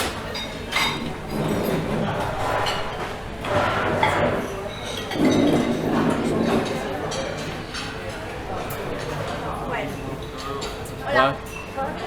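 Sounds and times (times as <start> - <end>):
cutlery and crockery clinks: 0.0 - 9.2.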